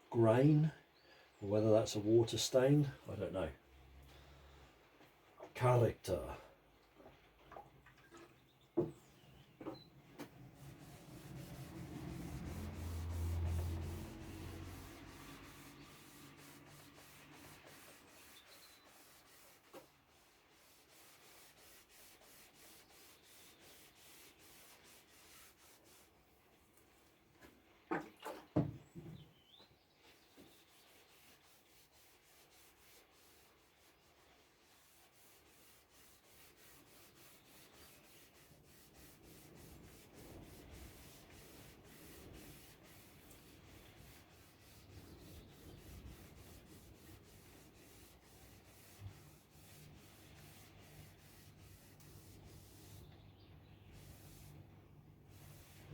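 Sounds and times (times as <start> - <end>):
hand rubbing on wooden surface: 9.6 - 26.4, 30.0 - 53.2, 53.8 - 54.7, 55.3 - 55.9.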